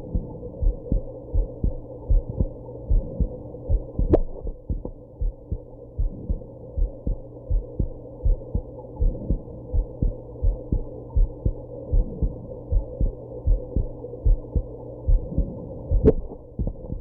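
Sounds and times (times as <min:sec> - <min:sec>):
muffled heartbeat thumps: 0:00.0 - 0:17.0.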